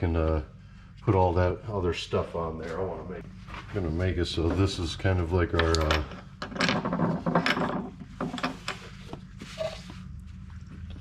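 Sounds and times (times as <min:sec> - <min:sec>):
steady low hum: 0:00.0 - 0:11.0
tools and parts clattering: 0:05.4 - 0:09.8.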